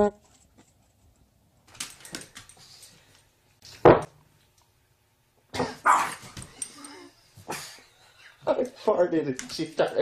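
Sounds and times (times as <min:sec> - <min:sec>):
dog barking: 0:05.8 - 0:06.2.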